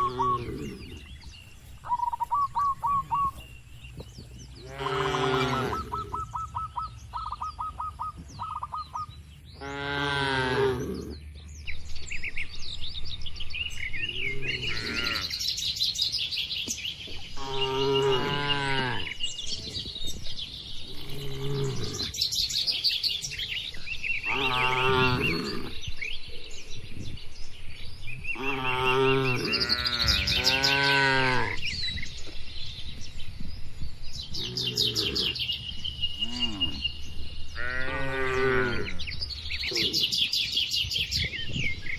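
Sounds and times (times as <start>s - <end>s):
birds chirping and whistling: 0.0s - 41.9s
cattle mooing: 4.6s - 6.1s, 24.3s - 25.8s.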